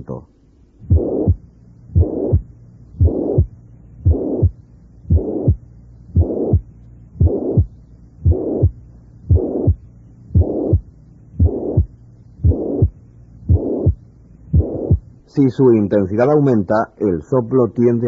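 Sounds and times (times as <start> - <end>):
heartbeat through stethoscope: 0.8 - 15.2
high-pitched blowing heart murmur: 0.8 - 15.3.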